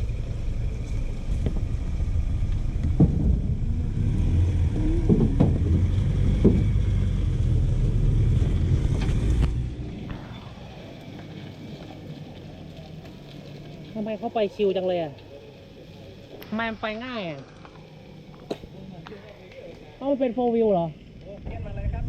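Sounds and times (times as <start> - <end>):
vehicle engine under load: 0.0 - 16.5.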